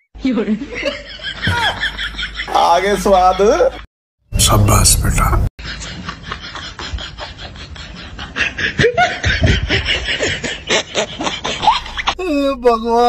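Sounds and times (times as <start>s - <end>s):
stifled laughter and snickering: 5.6s - 12.2s.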